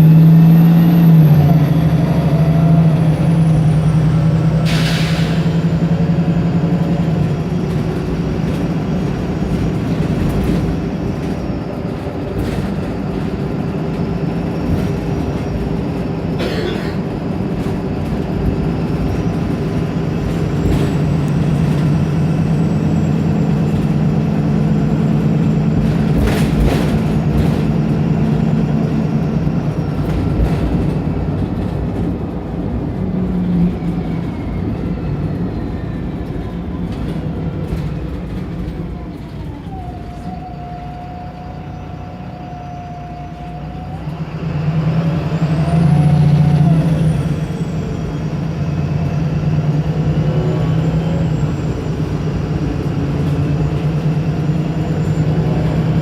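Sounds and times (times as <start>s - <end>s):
bus diesel engine accelerating: 0.0s - 56.0s.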